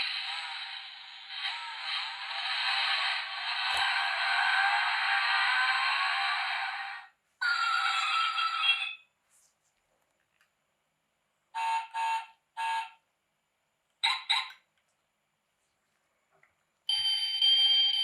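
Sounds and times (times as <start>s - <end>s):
tinny toy engine sound: 0.0s - 7.1s.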